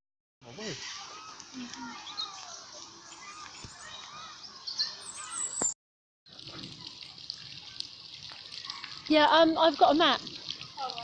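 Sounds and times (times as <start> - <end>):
birds chirping and calling: 0.8 - 5.7.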